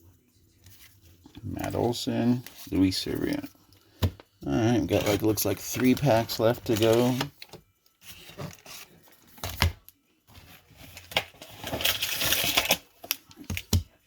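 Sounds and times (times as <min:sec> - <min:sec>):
wrapper tearing and rustling: 0:10.6 - 0:13.7.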